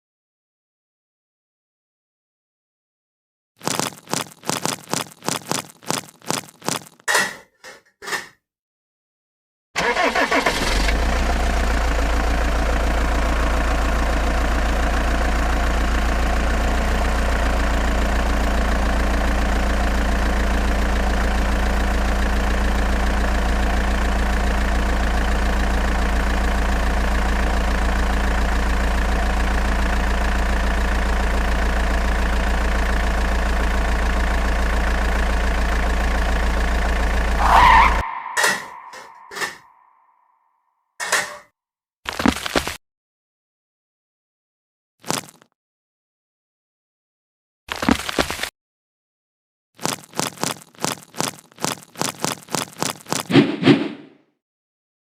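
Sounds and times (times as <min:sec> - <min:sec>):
engine cranking: 0:09.8 - 0:11.1
engine running with low hum: 0:09.9 - 0:39.7.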